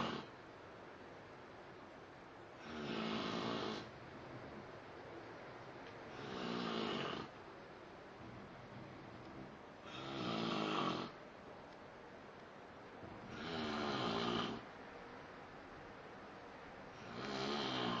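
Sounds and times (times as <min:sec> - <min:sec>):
man snoring: 0:00.0 - 0:00.3, 0:02.6 - 0:03.9, 0:06.1 - 0:07.3, 0:09.8 - 0:11.2, 0:13.3 - 0:14.6, 0:17.0 - 0:18.0.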